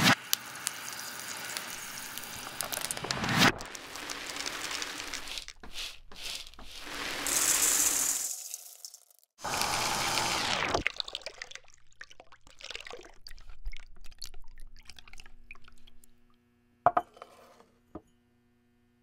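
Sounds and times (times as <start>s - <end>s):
liquid pouring: 0.4s - 16.3s
liquid trickling and dripping: 10.8s - 16.4s.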